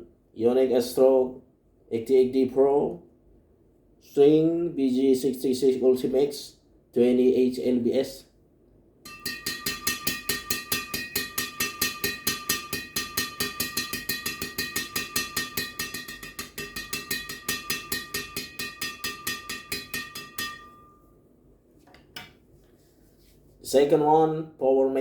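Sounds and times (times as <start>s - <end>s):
racket strings being struck: 9.1s - 21.1s
steady ringing tone: 9.1s - 21.2s.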